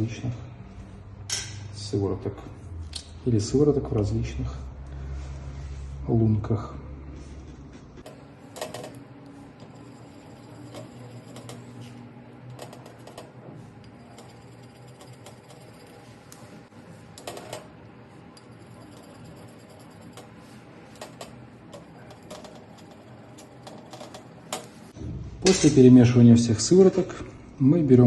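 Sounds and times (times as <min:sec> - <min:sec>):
faint room hum: 0:00.0 - 0:28.0.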